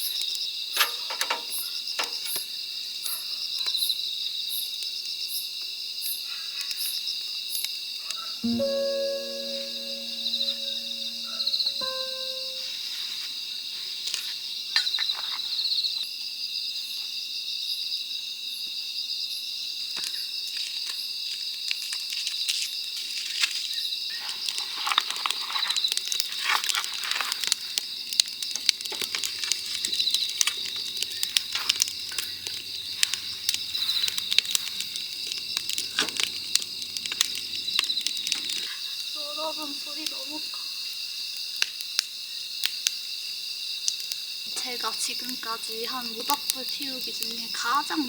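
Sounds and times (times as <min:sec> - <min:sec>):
campfire crackling and popping: 0:24.4 - 0:40.2
crickets chirping: 0:27.6 - 0:48.0.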